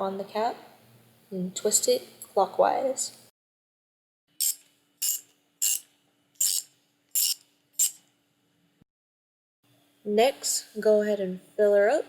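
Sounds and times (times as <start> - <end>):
ratchet wrench clicking: 4.4 - 8.0.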